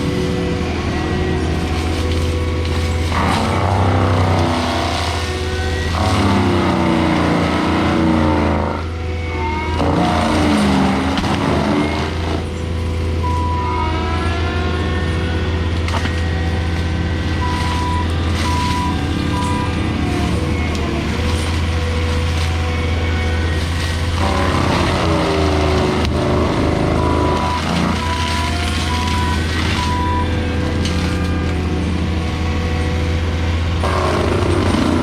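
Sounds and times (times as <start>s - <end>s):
diesel engine humming: 0.0s - 35.0s
squeals and whines: 0.0s - 35.0s
short high squeaks: 16.0s - 31.7s.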